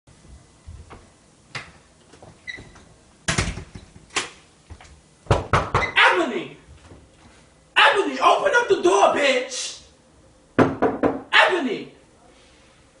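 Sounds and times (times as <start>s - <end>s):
knocking and banging on door: 5.3s - 6.0s, 10.6s - 11.3s.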